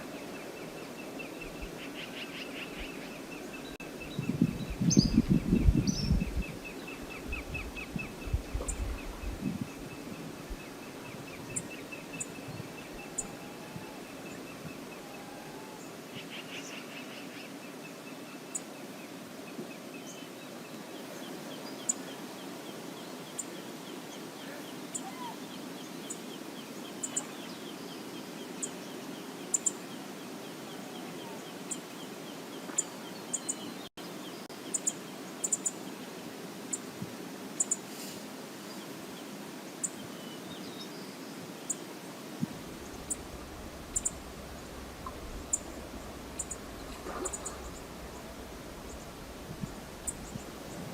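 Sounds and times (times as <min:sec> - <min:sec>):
river water running: 0:00.0 - 0:50.9
high bird trill: 0:42.8 - 0:50.4.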